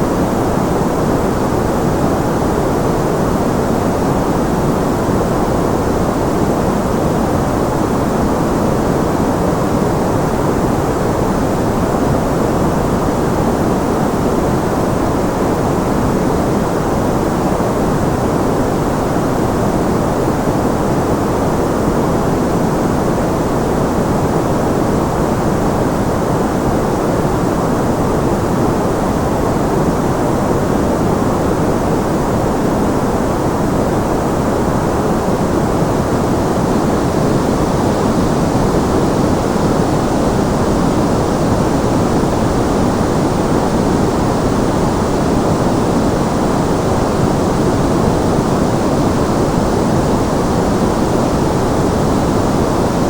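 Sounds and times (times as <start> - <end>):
steady masking noise hiss: 0.0 - 53.0.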